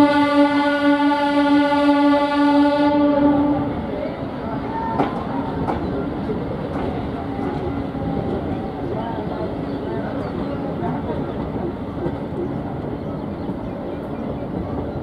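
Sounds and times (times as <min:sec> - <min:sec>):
train horn blast: 0:00.0 - 0:03.9
train running noise: 0:00.0 - 0:15.0.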